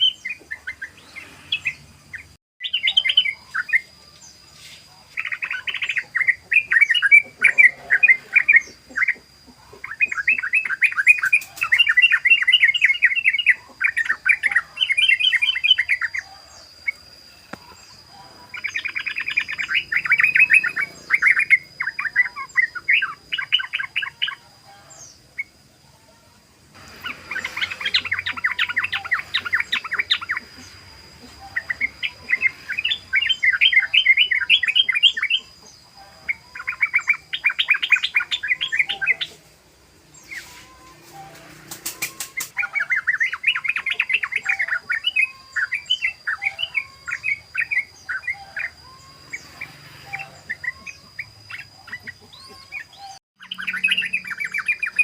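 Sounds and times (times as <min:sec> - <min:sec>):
bird song bubbling chatter: 0:05.2 - 0:24.4.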